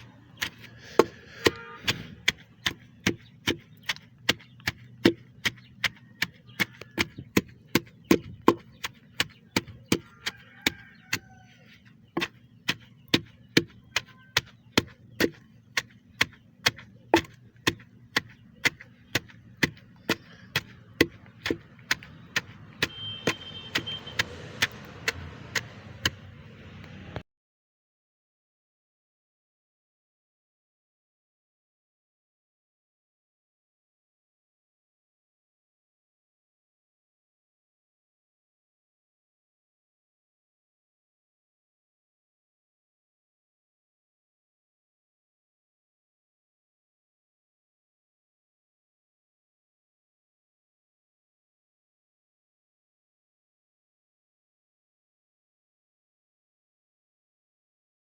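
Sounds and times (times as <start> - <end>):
pestle pounding in mortar: 0.2 - 26.4.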